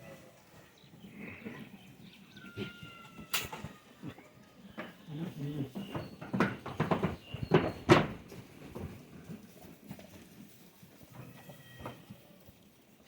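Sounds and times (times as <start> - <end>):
goat hooves knocking on hard floor: 5.8 - 9.0.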